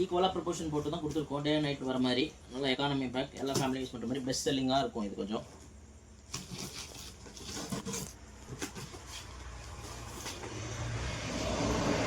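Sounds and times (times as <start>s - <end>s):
knocks and rustles of packaging: 6.2s - 10.6s.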